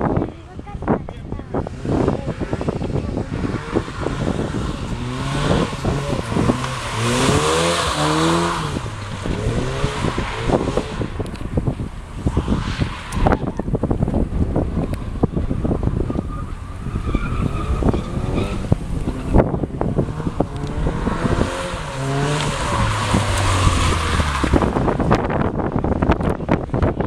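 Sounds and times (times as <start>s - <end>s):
wind buffeting microphone: 0.0s - 27.0s
race car engine revving: 1.5s - 26.4s
tyre squeal: 14.6s - 19.5s.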